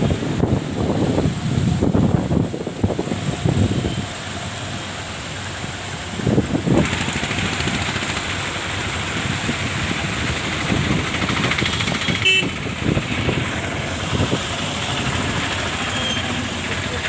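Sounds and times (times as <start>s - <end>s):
vehicle engine rumbling: 0.0s - 17.0s
horn toot: 12.0s - 12.6s.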